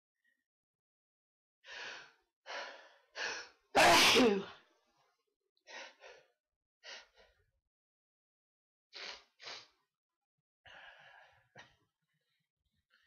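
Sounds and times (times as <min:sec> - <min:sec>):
person sneezing: 0:03.8 - 0:04.5.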